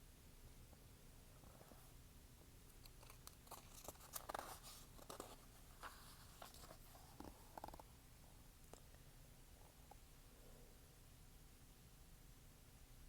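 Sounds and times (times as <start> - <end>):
paper pages crinkling: 3.0 - 7.8.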